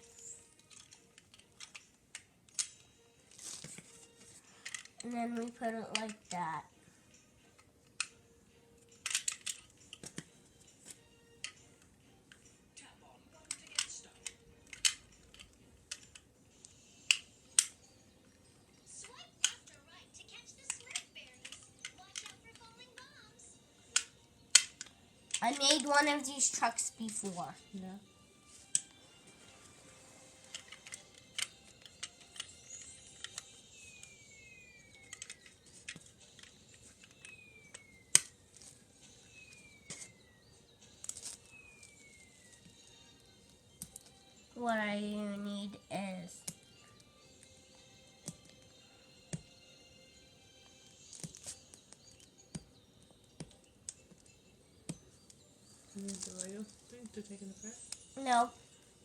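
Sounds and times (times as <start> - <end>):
plastic bricks clicking together: 0.6 - 2.8, 4.6 - 6.4, 8.9 - 10.3, 13.5 - 16.3, 17.1 - 17.8, 20.6 - 23.1, 23.9 - 26.1, 30.5 - 33.4, 34.9 - 38.3
plastic bricks clicking and clattering: 9.0 - 10.2, 20.7 - 22.7.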